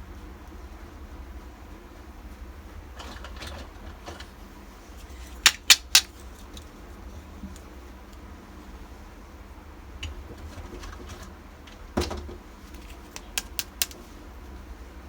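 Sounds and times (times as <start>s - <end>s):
toy kitchenware rustling and tapping: 3.0s - 4.4s, 5.0s - 6.7s.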